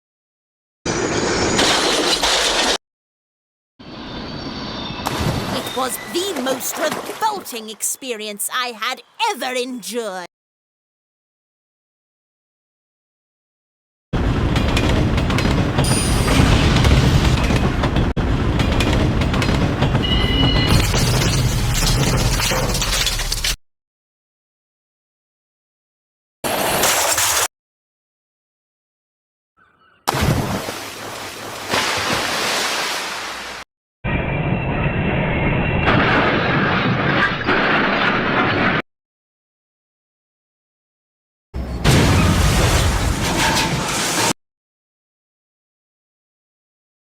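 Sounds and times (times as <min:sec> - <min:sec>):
train rumbling and clattering on rails: 0:14.2 - 0:22.8.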